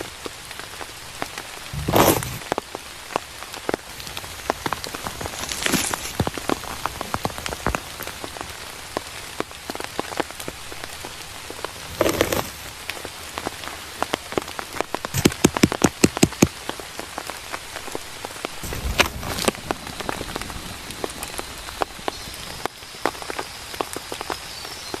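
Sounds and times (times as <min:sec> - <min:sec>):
rain falling: 0:00.0 - 0:25.0
rustling: 0:01.7 - 0:02.6, 0:03.9 - 0:08.4, 0:11.7 - 0:12.8, 0:15.0 - 0:16.7.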